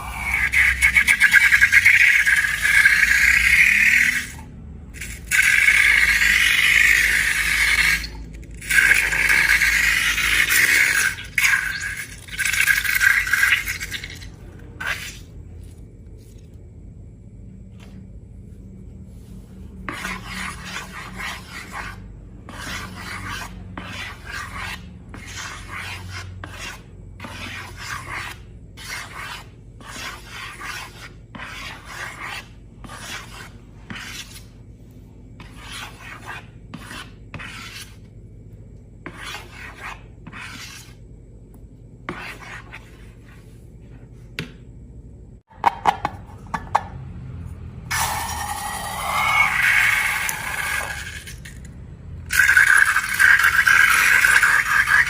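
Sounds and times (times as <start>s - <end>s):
rubbing or scraping strokes: 19.1s - 34.6s.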